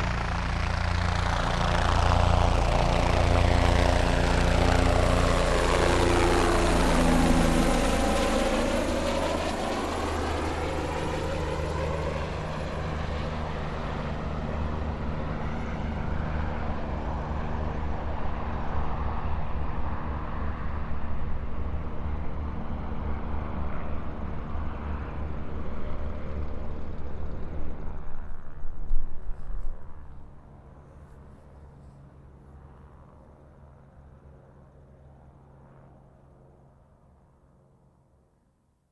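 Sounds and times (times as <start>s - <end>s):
helicopter taking off: 0.0s - 30.6s.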